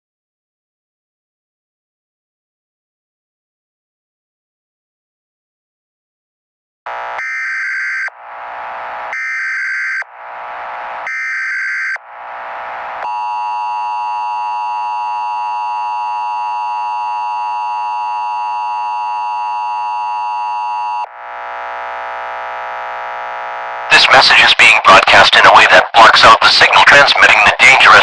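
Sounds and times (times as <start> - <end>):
long steady alert tone: 6.9 - 8.2, 9.1 - 10.1, 11.0 - 12.0, 13.0 - 21.1.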